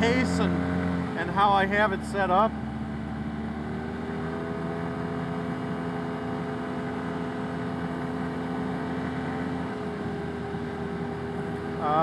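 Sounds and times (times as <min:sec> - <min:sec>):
utility vehicle engine droning: 0:00.0 - 0:12.0.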